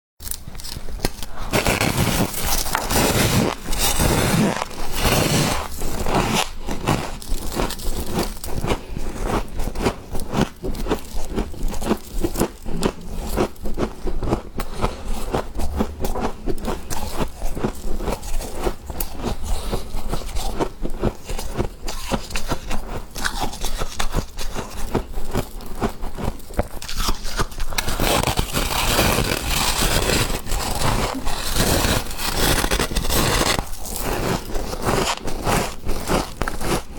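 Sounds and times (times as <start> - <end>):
frost being chewed and crunched: 0.2 - 36.9.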